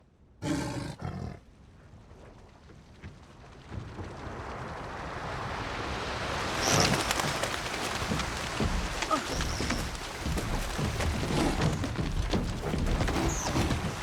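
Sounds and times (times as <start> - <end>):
tiger snarling: 0.4 - 1.4, 9.1 - 14.0
sea water and spray hissing: 4.5 - 14.0.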